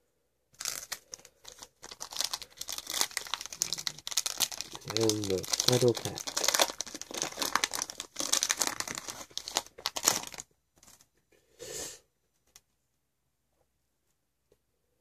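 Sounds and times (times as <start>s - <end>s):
foil wrapper crinkling and tearing: 0.6s - 10.4s.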